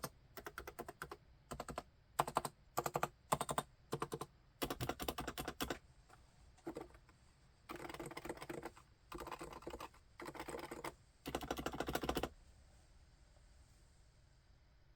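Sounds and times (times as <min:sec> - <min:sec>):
keyboard typing: 0:00.0 - 0:05.8, 0:06.6 - 0:07.0, 0:07.7 - 0:12.3.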